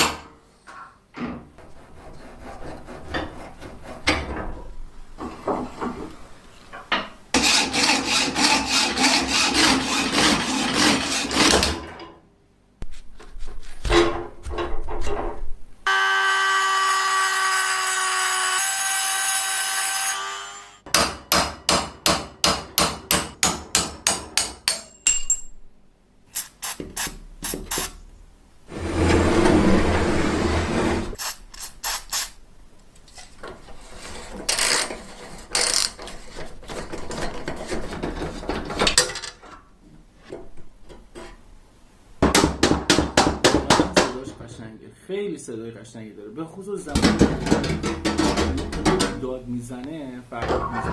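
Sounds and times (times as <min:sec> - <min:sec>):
metal scraping and rubbing: 0:28.7 - 0:32.4, 0:33.1 - 0:38.9.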